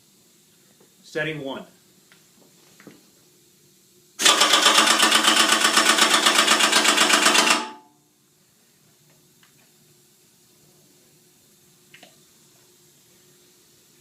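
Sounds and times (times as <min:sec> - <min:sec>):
pneumatic impact wrench rattling: 0:04.2 - 0:07.8.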